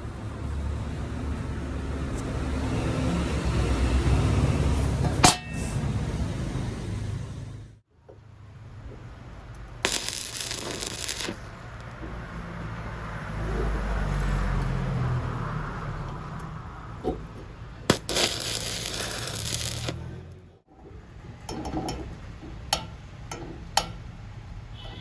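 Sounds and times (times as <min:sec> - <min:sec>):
welding arc crackling and sizzling: 0:09.8 - 0:11.9, 0:17.9 - 0:20.2.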